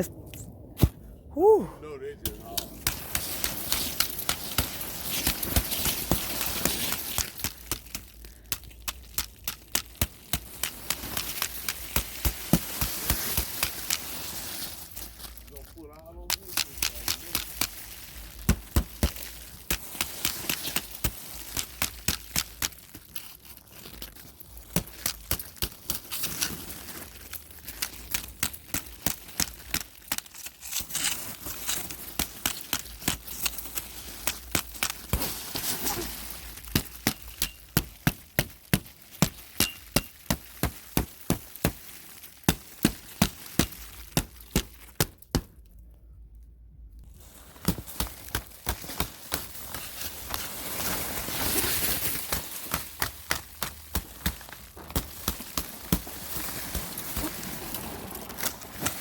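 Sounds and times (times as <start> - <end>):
snow crust cracking and crunching: 1.9 - 45.2, 47.0 - 59.0.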